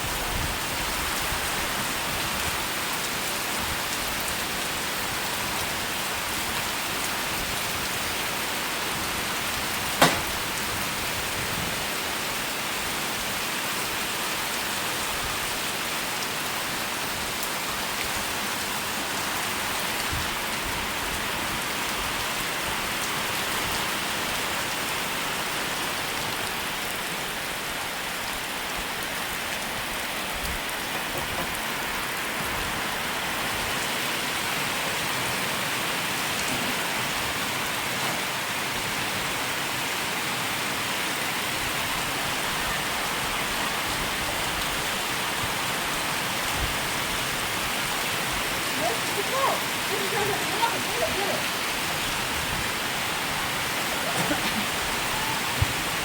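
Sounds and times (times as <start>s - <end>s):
steady rain hiss: 0.0s - 56.0s
sharp knock: 10.0s - 10.3s.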